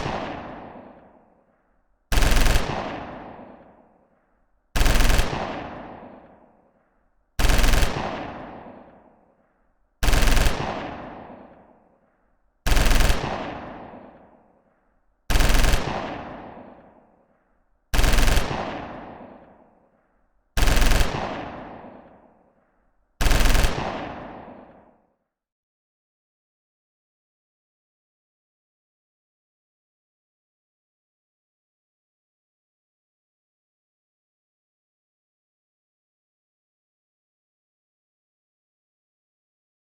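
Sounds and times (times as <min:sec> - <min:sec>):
gunfire echo: 0:00.0 - 0:17.4, 0:18.0 - 0:25.0
machine-gun bursts: 0:02.1 - 0:02.8, 0:04.8 - 0:05.4, 0:07.4 - 0:08.1, 0:10.0 - 0:10.7, 0:12.7 - 0:13.5, 0:15.3 - 0:16.0, 0:18.0 - 0:18.6, 0:20.6 - 0:21.4, 0:23.2 - 0:23.8.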